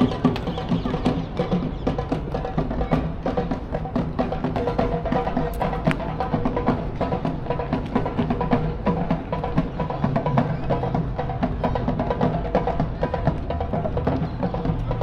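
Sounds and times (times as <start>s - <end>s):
music with woody knocks: 0.0s - 10.4s.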